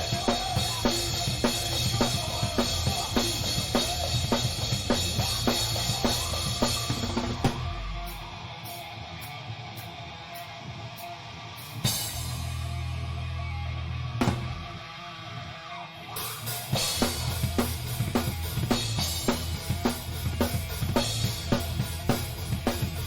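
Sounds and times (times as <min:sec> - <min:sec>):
drum kit beat: 0:00.0 - 0:12.9, 0:14.2 - 0:14.9, 0:16.2 - 0:23.0
low guitar and bass chord: 0:12.4 - 0:14.8.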